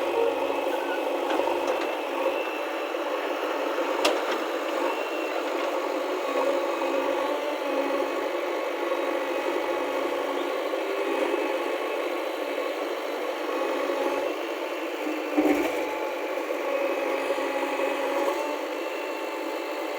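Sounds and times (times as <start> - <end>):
heavy machinery diesel engine: 0.0 - 8.0.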